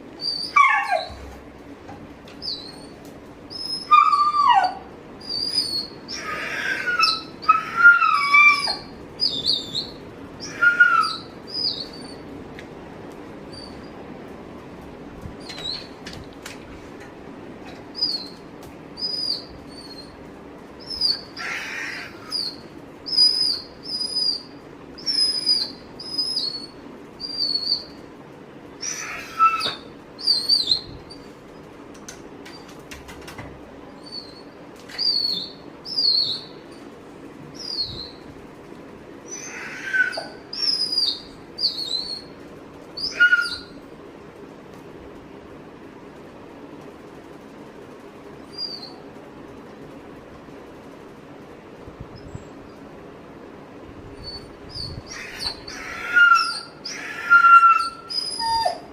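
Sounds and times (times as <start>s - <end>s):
dog whining squeaks: 0.2s - 1.3s, 2.4s - 12.2s, 13.5s - 14.0s, 15.4s - 16.0s, 19.0s - 20.2s, 20.9s - 28.0s, 28.8s - 31.3s, 34.0s - 36.5s, 37.6s - 38.2s, 39.3s - 42.3s, 43.0s - 43.8s, 48.5s - 49.0s, 54.2s - 58.9s.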